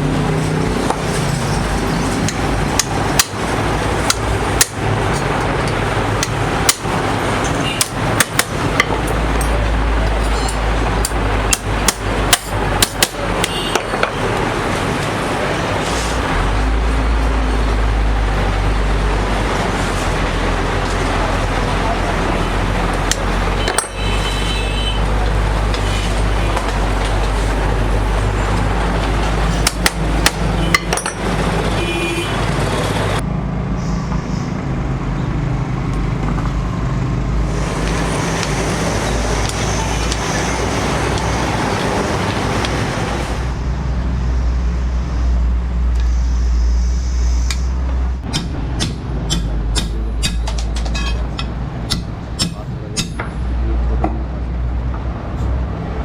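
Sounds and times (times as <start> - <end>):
low mechanical rumble: 0.0 - 56.0
sharp metallic taps: 4.0 - 14.2, 29.6 - 31.3, 47.5 - 53.4.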